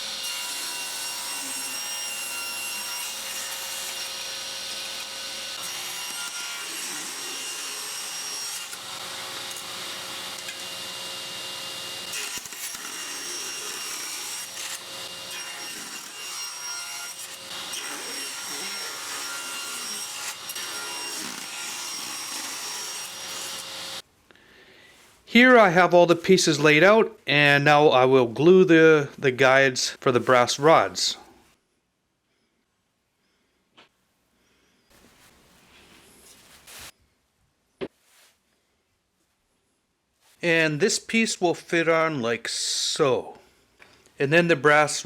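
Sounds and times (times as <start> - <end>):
power saw cutting wood: 0.0 - 24.0.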